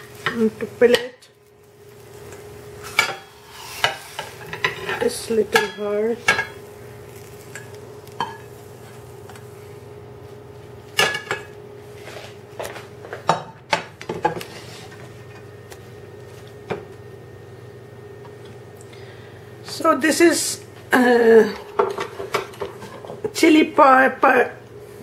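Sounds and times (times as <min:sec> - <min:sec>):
low steady hum: 0:00.0 - 0:25.0
utensils clinking on pan and plate: 0:02.8 - 0:06.6, 0:07.5 - 0:08.5.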